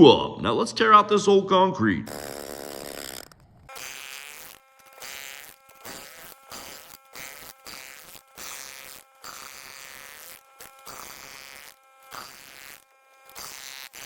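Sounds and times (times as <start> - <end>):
jackhammer breaking concrete: 2.1 - 14.0.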